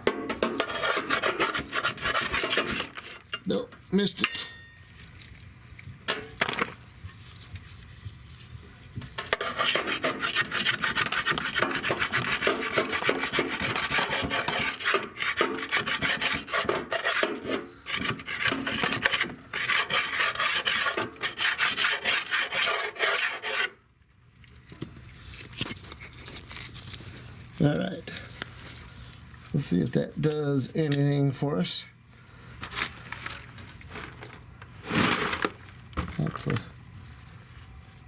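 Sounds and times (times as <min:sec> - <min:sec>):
metal scraping rasp: 0:00.4 - 0:03.4, 0:09.3 - 0:23.8.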